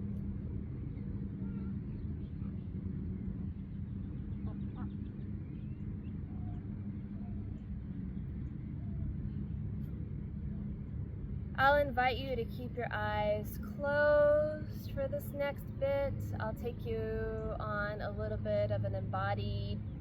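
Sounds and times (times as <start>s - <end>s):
steady low rumble: 0.0s - 20.0s
faint bird chirps: 1.0s - 2.7s.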